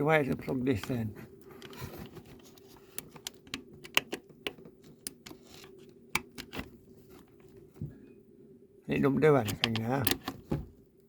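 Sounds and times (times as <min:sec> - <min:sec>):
faint hum: 0:00.0 - 0:11.0
electrical socket clicks and crackles: 0:01.6 - 0:06.8, 0:09.4 - 0:10.4.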